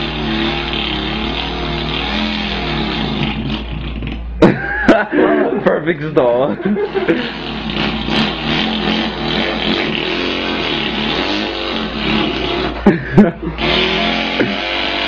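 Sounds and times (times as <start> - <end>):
man imitating engine: 0.0 - 15.0
loud vocal pops: 3.2 - 4.7.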